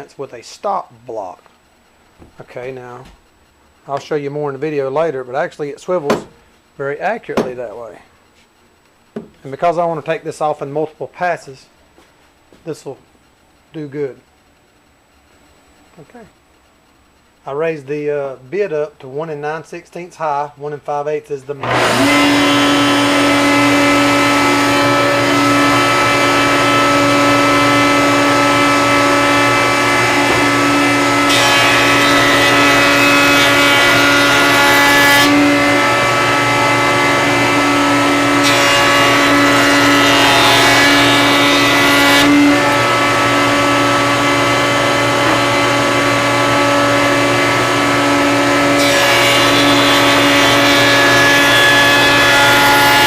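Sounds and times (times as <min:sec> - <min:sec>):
router whining: 0:21.6 - 0:53.0.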